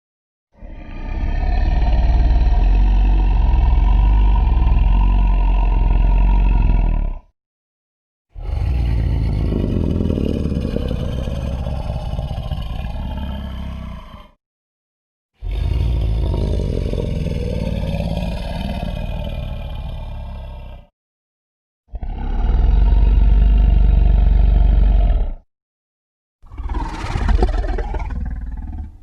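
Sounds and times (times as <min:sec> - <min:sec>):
monster rattling growls: 0:08.4 - 0:14.3, 0:15.4 - 0:20.0, 0:26.5 - 0:29.0.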